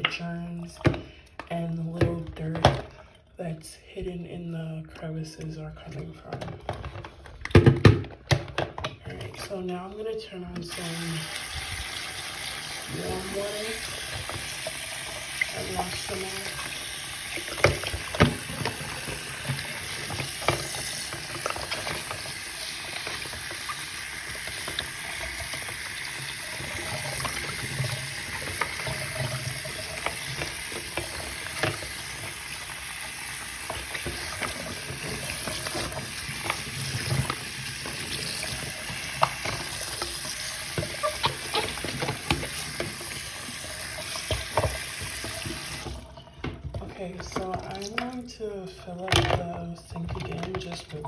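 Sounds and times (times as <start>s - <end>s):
tap water running into a sink: 10.6s - 48.3s.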